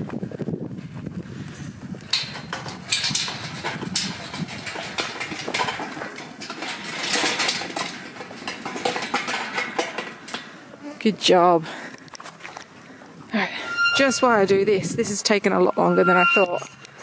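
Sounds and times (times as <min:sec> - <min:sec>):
sheep hooves clattering: 0:01.5 - 0:13.3.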